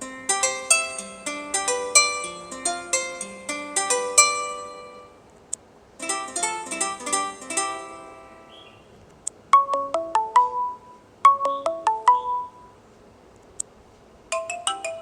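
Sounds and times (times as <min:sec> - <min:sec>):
plucked-string ringtone melody: 0:00.0 - 0:05.2, 0:06.0 - 0:08.6, 0:09.6 - 0:12.7, 0:14.3 - 0:15.0.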